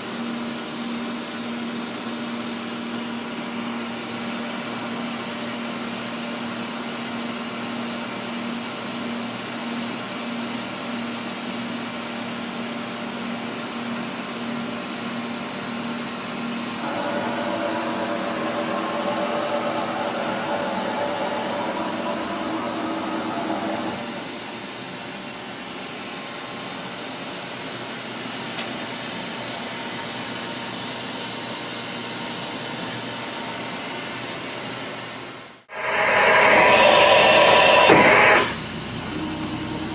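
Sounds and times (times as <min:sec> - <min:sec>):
louder whirring tone: 0:16.0 - 0:24.4, 0:35.7 - 0:39.9
steady machine hum: 0:16.6 - 0:24.4, 0:35.7 - 0:38.7
milling machine whirring: 0:16.7 - 0:24.4, 0:35.7 - 0:38.6.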